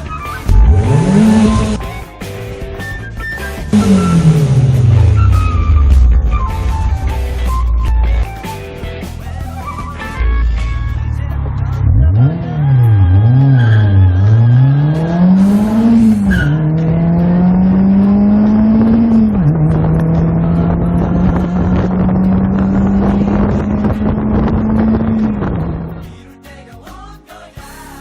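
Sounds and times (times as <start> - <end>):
car engine revving: 0.4 - 2.0, 3.7 - 8.0, 10.3 - 26.0.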